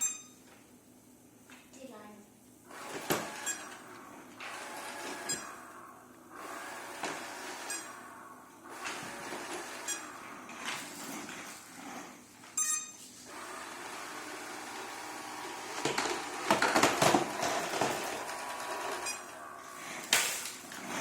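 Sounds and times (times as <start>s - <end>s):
robot vacuum cleaner clattering: 14.8s - 19.4s.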